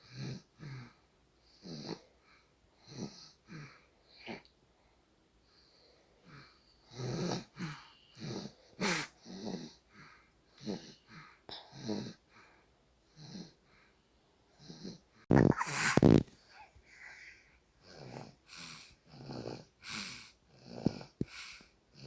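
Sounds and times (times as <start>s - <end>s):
person snoring in short snores: 14.6s - 16.3s.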